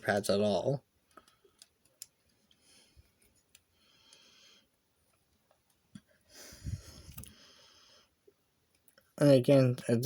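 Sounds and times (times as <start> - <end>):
person breathing: 2.5 - 4.8, 6.1 - 8.2.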